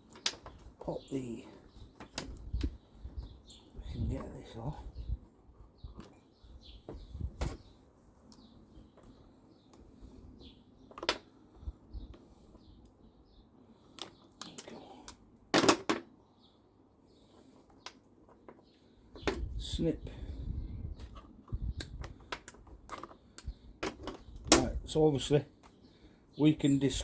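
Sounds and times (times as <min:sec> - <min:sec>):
plastic parts clicking and knocking: 0:00.0 - 0:00.8, 0:02.0 - 0:02.8, 0:10.9 - 0:11.3, 0:13.9 - 0:16.1, 0:21.1 - 0:24.7.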